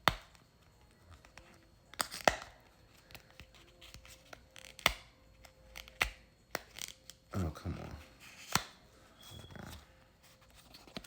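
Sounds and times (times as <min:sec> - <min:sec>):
faint packaging rustling: 0:00.5 - 0:11.0
packaging crackling and snapping: 0:01.3 - 0:07.2.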